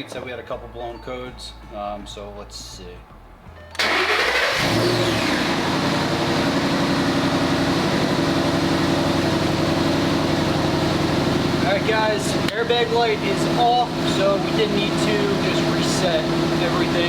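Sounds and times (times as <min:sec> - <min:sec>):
car starter cranking: 0:03.7 - 0:07.1
car engine idling: 0:03.7 - 0:17.0.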